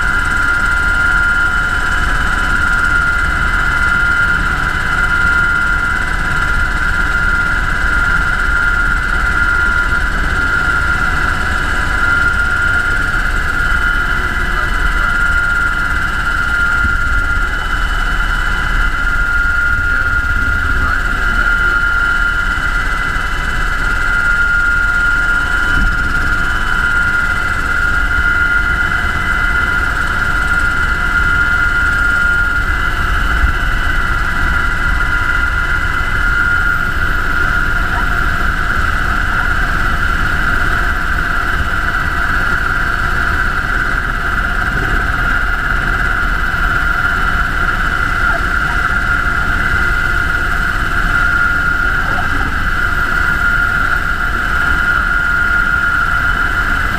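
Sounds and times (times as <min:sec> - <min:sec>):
helicopter low rumble: 0:00.0 - 0:56.9
high-pitched helicopter whine: 0:00.0 - 0:56.9.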